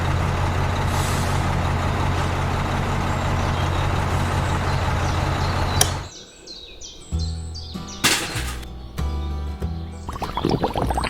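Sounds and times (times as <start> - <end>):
heavy vehicle engine running: 0.0 - 6.1.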